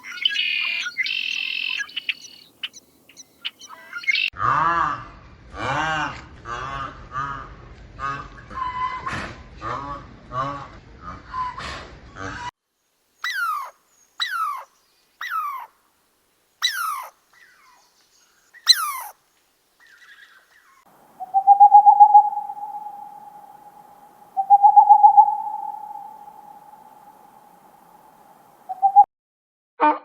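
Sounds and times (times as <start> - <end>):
long quavering hoot-like calls: 0.0 - 4.3, 21.2 - 29.0.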